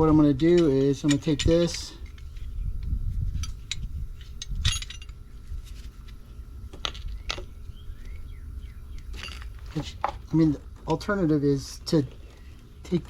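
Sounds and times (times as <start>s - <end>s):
metal tools clinking: 0.0s - 2.5s, 3.3s - 5.2s
low handling rumble: 0.0s - 12.8s.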